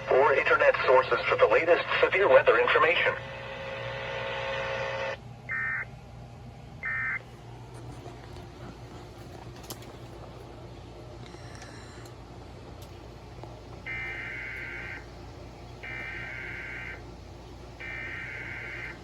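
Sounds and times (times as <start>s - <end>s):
steady buzzing noise: 0.0s - 5.2s, 11.4s - 19.0s.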